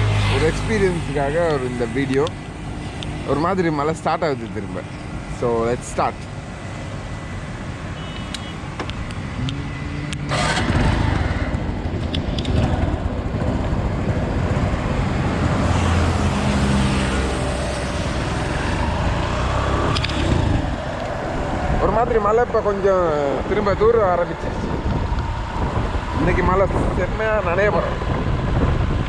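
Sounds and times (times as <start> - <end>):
motorbike engine: 9.4 - 21.4.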